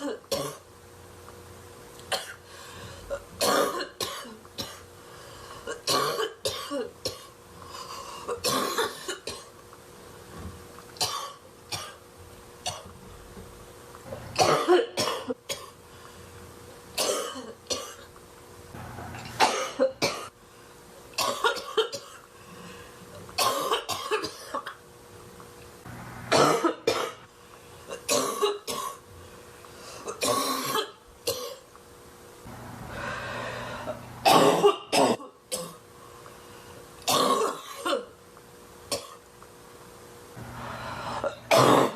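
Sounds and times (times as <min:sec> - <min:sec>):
woman coughing hard: 0:00.0 - 0:00.6, 0:02.1 - 0:02.4, 0:03.1 - 0:04.9, 0:05.7 - 0:07.4, 0:08.3 - 0:09.5, 0:11.0 - 0:12.0, 0:14.4 - 0:15.8, 0:17.0 - 0:18.0, 0:19.4 - 0:20.3, 0:21.2 - 0:22.2, 0:23.4 - 0:24.8, 0:26.3 - 0:27.2, 0:27.9 - 0:29.0, 0:30.1 - 0:31.6, 0:34.2 - 0:35.8, 0:37.1 - 0:38.2, 0:38.9 - 0:39.2, 0:41.2 - 0:41.9
throat clearing: 0:41.3 - 0:41.9.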